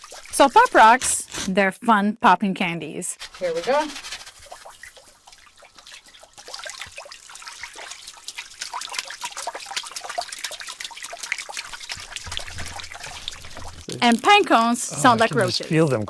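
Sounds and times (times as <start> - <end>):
popping candy crackling: 12.4 - 16.0.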